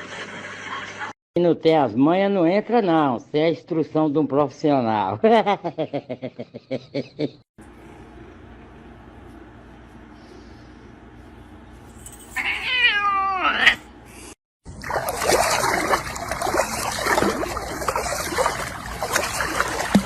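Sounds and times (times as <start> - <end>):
cat meowing: 12.4 - 13.9.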